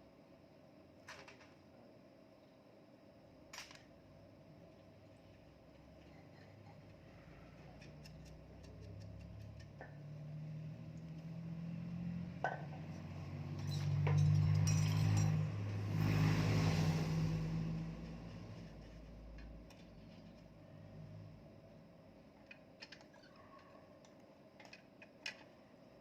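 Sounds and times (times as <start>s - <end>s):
engine humming: 7.2s - 20.0s
metallic clinks of tools: 13.6s - 15.5s.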